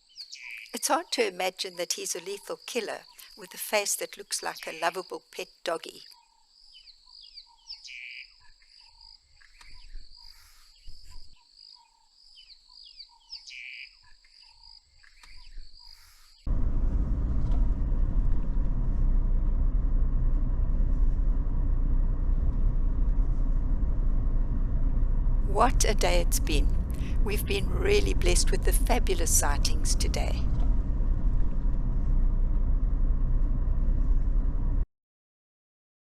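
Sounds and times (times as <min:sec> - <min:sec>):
birds chirping and calling: 0:06.1 - 0:16.3
loud low rumble: 0:16.5 - 0:34.8.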